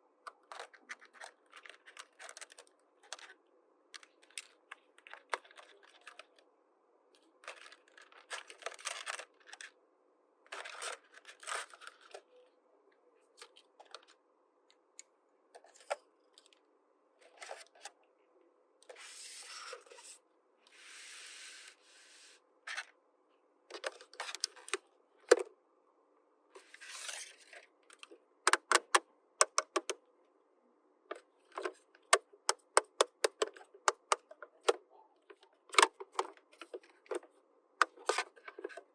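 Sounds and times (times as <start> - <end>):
small plastic pieces clicking: 27.9 - 30.0, 31.6 - 34.8.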